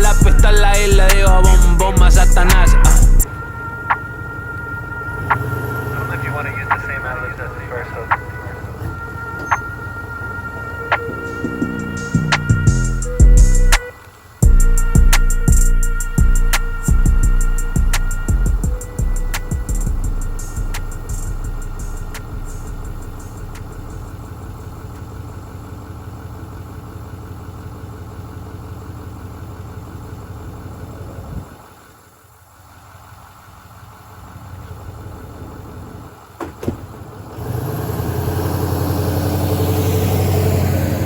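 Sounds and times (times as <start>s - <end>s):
engine revving up: 0.0s - 3.2s, 5.0s - 9.7s, 10.9s - 13.8s, 37.3s - 41.0s
engine idling: 0.0s - 41.0s.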